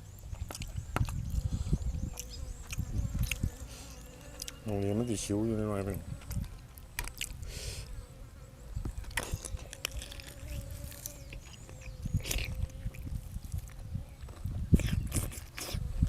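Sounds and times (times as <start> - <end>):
chewing: 0.3 - 4.6, 6.2 - 7.4, 9.1 - 15.9.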